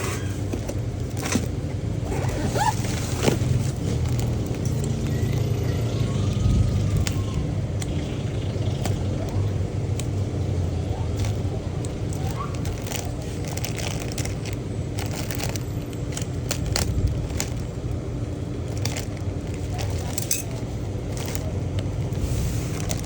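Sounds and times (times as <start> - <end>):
packaging crinkling: 0.7 - 5.5, 10.9 - 23.0.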